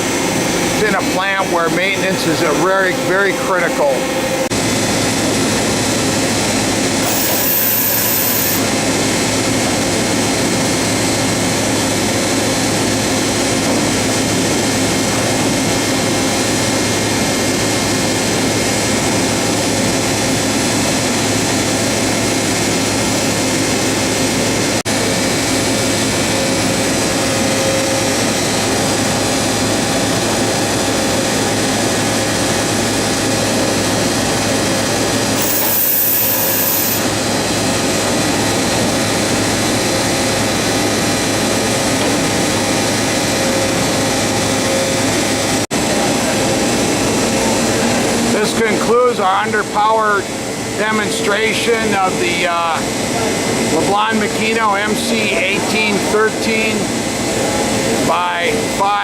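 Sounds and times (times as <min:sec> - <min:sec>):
machine hum and hiss: 0:05.3 - 0:08.7, 0:25.0 - 0:46.1
short high-pitched tone: 0:07.0 - 0:08.6, 0:35.4 - 0:37.1.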